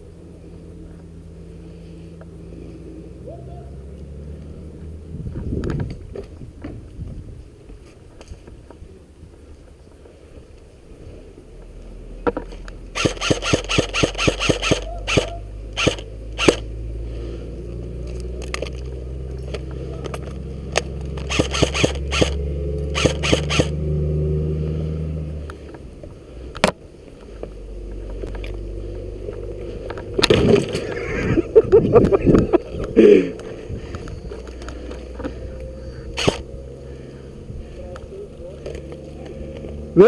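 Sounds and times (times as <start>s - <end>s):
airsoft gun shots: 13.0s - 16.7s, 21.2s - 22.4s, 23.0s - 23.8s.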